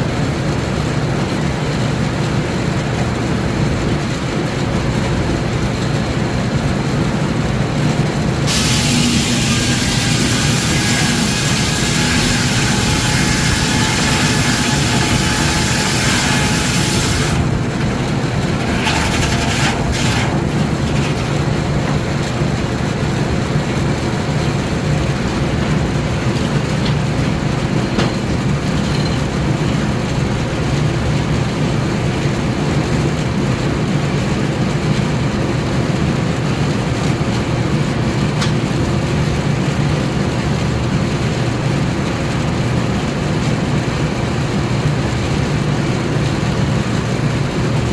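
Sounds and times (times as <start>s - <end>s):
sawmill machinery rumbling: 0.0s - 47.9s
steam hissing: 8.5s - 20.4s.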